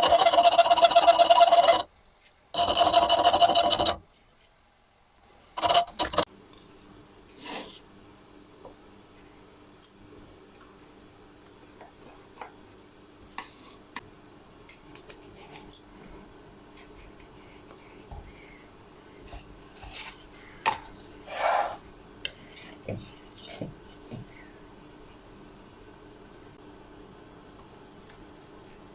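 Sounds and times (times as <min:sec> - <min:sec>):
faint steady hum: 0:00.0 - 0:28.9
rubbing or filing strokes: 0:21.2 - 0:21.8
loud scrape: 0:21.2 - 0:21.9.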